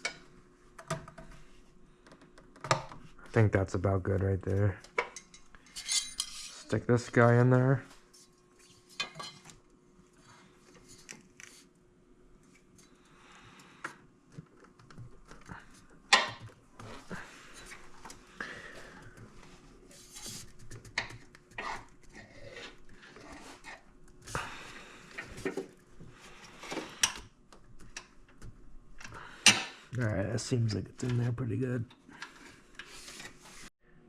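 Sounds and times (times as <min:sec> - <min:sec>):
metal clinks and scraping: 0:05.2 - 0:06.7.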